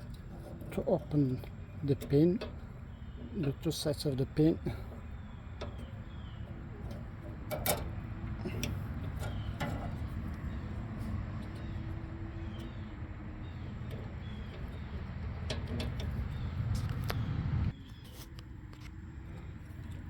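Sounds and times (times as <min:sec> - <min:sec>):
steady low hum: 0:00.0 - 0:20.0
metal clicks and taps: 0:04.7 - 0:12.8, 0:13.5 - 0:17.3.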